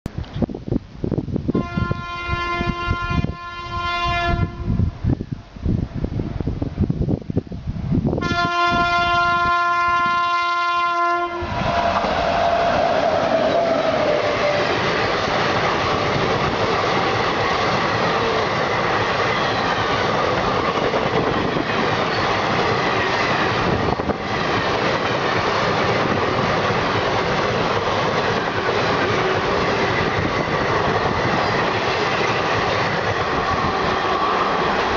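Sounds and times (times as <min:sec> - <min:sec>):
train wheels roaring on rail: 0:00.1 - 0:34.9
locomotive horn blast: 0:01.5 - 0:04.9, 0:08.2 - 0:14.7.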